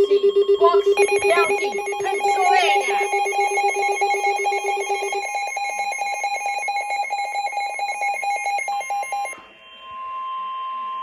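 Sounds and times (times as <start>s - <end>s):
shrill pulsing alert tone: 0.0s - 9.4s
low electronic tone: 0.0s - 11.0s.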